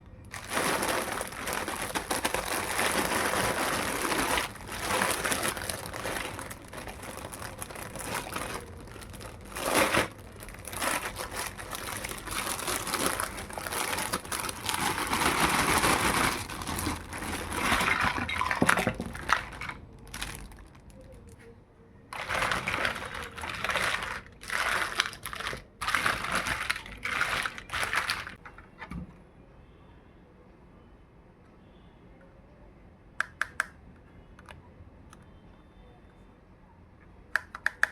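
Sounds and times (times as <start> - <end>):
plastic packaging crinkling: 0.2 - 21.4, 22.1 - 28.4
sharp plastic crackles: 0.2 - 21.5, 22.1 - 28.5.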